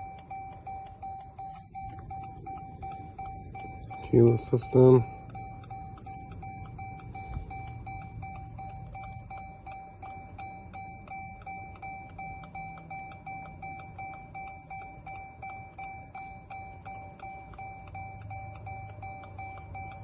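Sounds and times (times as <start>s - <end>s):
electronic warning chime: 0.0s - 20.0s.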